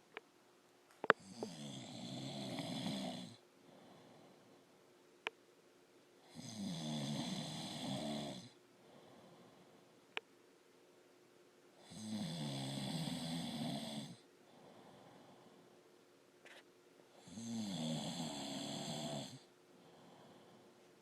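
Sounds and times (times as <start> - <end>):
quiet breaths: 0.9 - 21.0
man snoring: 1.2 - 4.4, 6.2 - 9.2, 11.8 - 14.2, 17.2 - 20.6.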